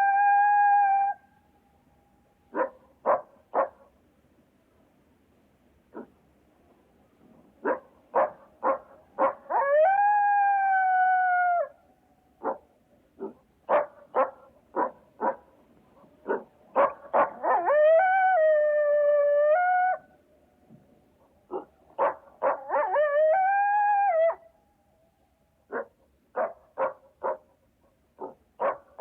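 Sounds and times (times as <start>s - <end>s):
coyote barking and howling: 0.0s - 1.2s, 7.6s - 11.8s, 16.2s - 20.2s, 21.5s - 24.6s.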